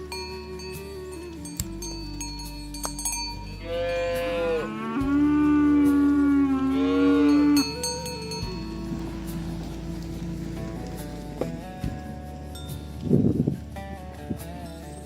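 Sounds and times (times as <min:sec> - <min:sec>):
cowbells clinking: 0:00.0 - 0:04.4, 0:07.1 - 0:15.0
ox mooing: 0:03.6 - 0:12.6.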